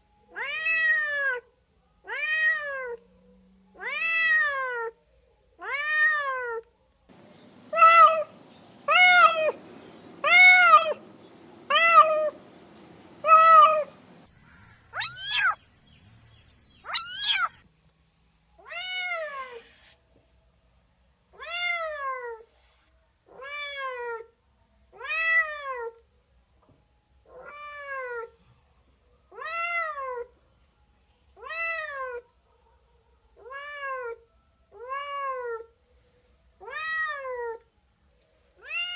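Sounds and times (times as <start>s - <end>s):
cats meowing: 7.1s - 17.6s, 36.6s - 37.6s.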